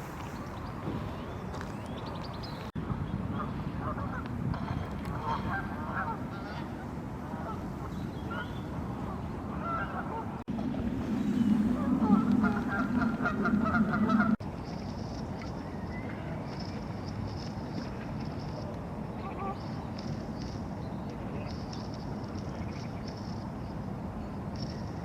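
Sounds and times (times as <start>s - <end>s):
geese honking: 8.3s - 10.4s, 11.4s - 14.4s
low steady rumble: 9.0s - 14.6s.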